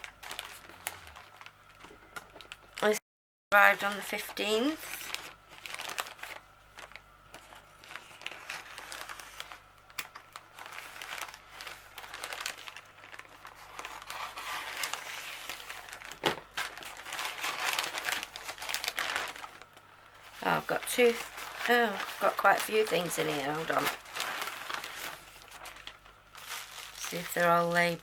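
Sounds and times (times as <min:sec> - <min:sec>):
plastic bag crinkling: 0:00.0 - 0:03.0, 0:03.8 - 0:28.0.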